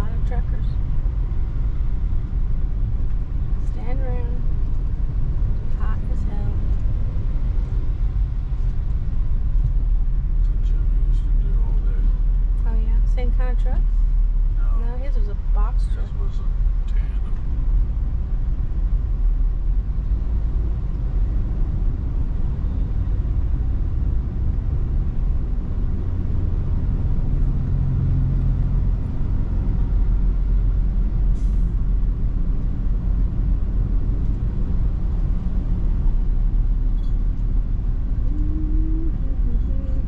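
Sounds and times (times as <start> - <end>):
vehicle interior engine rumble: 0.0 - 40.0.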